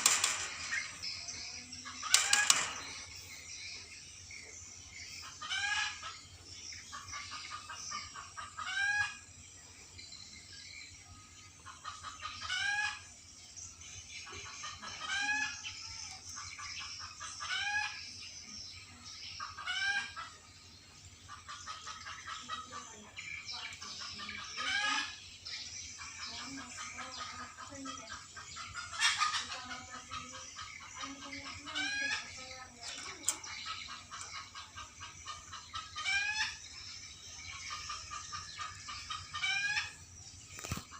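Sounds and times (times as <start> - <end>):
starling calling: 0.0 - 4.0, 21.6 - 40.9.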